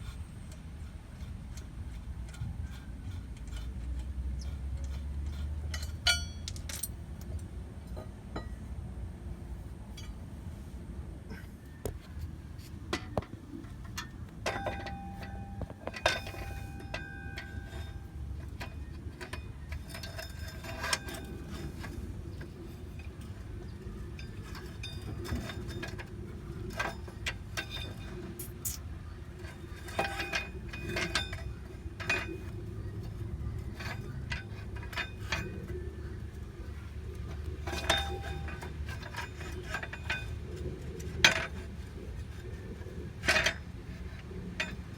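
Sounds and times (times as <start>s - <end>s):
steady low hum: 0.0s - 44.9s
metal tools clinking: 5.7s - 7.0s, 13.0s - 23.4s, 29.5s - 35.8s, 37.4s - 40.4s.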